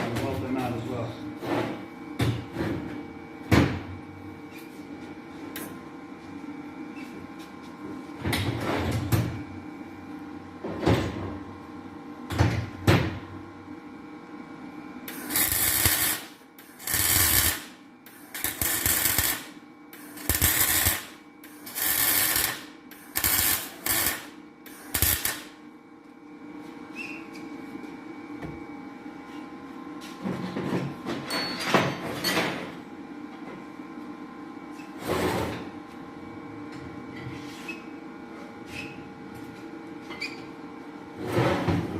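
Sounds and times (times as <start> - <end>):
steady shop hum: 0.0 - 41.9
crackling welding arc: 15.1 - 25.6.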